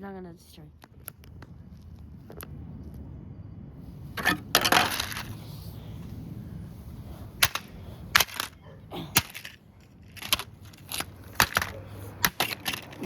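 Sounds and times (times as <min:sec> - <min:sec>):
plastic toy car being smashed: 0:04.2 - 0:05.3, 0:07.4 - 0:13.0.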